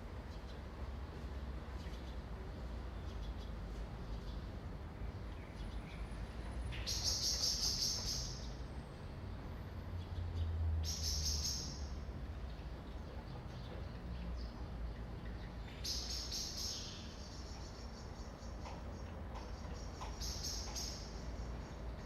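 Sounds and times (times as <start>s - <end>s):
distant city traffic rumble: 0.0s - 22.0s
birds chirping: 13.6s - 22.0s.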